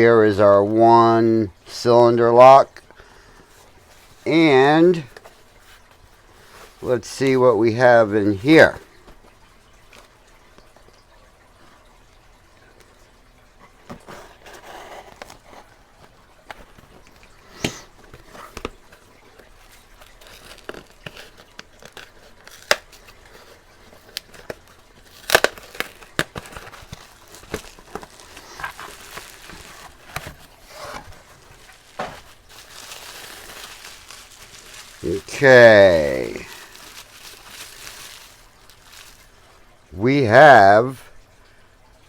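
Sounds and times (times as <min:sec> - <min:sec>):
packaging crinkling and tearing: 0:13.9 - 0:39.4.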